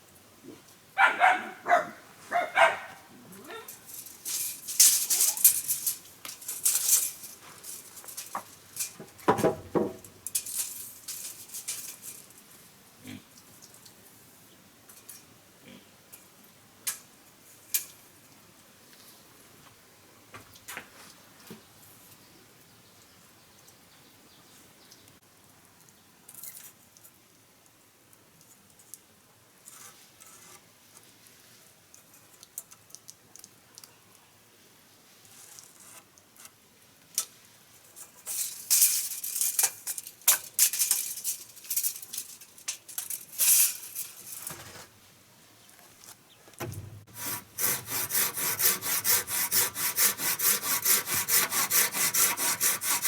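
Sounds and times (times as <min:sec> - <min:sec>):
knocks of wood being handled: 0:08.2 - 0:10.2, 0:46.5 - 0:52.4
wood scraping and rustling: 0:44.1 - 0:45.0, 0:45.9 - 0:53.0
hand saw cutting wood: 0:47.1 - 0:53.0.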